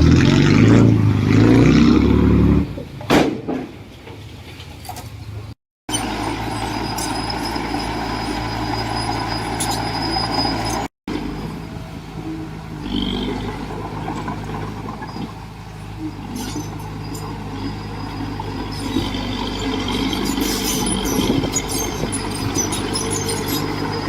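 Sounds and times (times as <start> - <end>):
diesel machinery engine running: 5.9 - 24.0.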